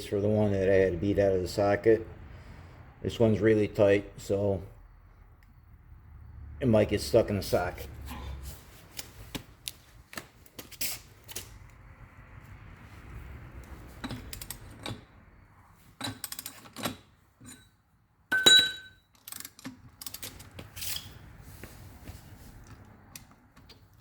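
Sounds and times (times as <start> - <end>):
wrench clicking on lug bolt: 16.0 - 17.0, 19.2 - 21.0
sharp metal clink: 18.3 - 19.0.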